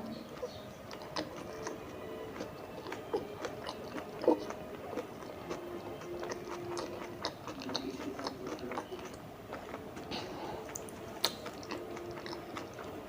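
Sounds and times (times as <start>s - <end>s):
wet chewing and biting: 0.0s - 13.0s.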